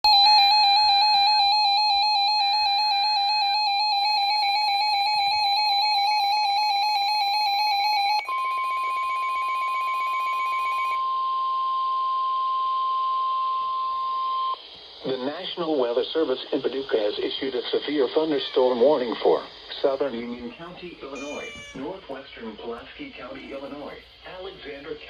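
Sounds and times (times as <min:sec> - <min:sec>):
buzzy pulsing alarm tone: 0:00.1 - 0:13.6
steady whistle-like attention tone: 0:08.2 - 0:14.6.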